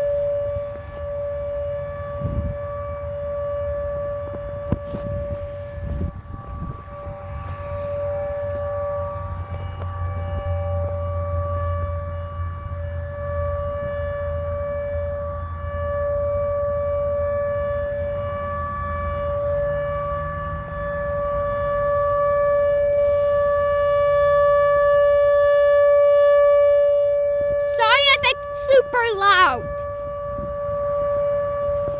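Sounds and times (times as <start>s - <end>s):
siren steady high tone: 0.0s - 31.9s.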